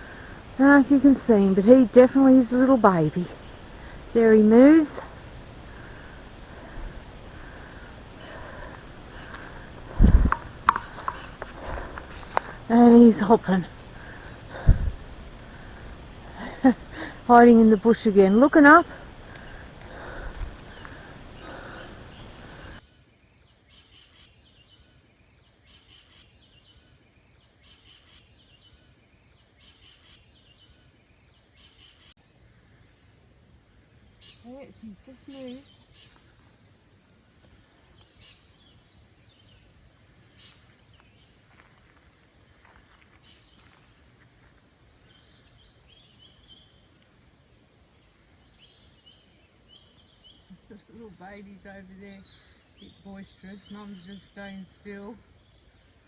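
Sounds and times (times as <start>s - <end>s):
bird chirping: 0.0s - 22.8s
loud rustling: 0.0s - 22.8s
low background rumble: 0.0s - 22.8s.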